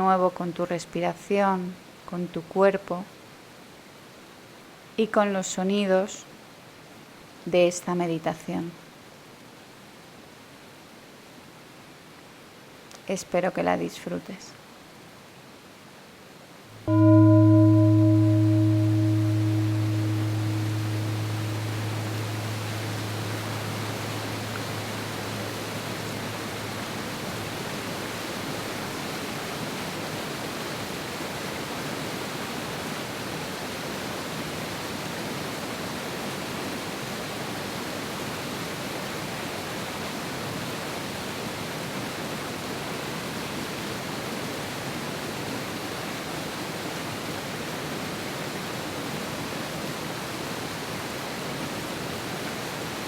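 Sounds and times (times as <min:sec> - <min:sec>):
low bell tone: 0:16.9 - 0:27.6.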